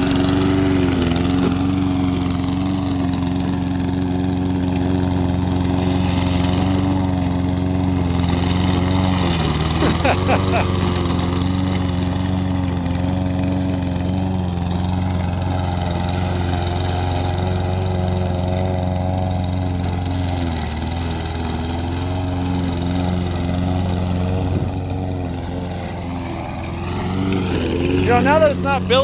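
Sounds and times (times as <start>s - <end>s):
lawnmower engine running: 0.0s - 29.0s.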